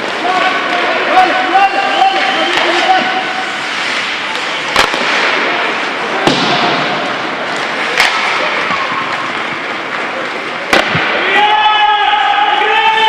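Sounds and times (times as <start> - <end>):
skating hiss: 0.0 - 11.5
puck and stick knocks: 4.7 - 5.5, 6.2 - 10.0, 10.7 - 11.2.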